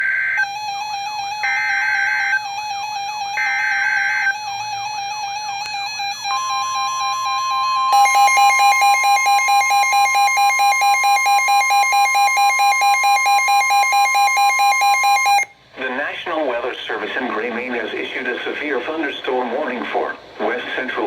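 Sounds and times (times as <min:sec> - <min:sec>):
steady high alert tone: 0:00.0 - 0:15.5.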